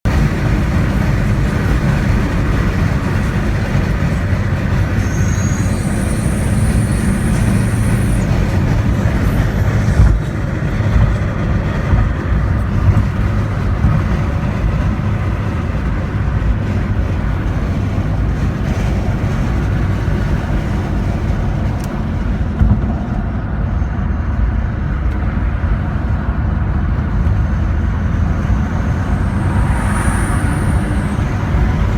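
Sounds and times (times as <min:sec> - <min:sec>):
car engine running: 0:00.0 - 0:31.9
high turbo whistle: 0:00.6 - 0:10.9, 0:28.2 - 0:31.9.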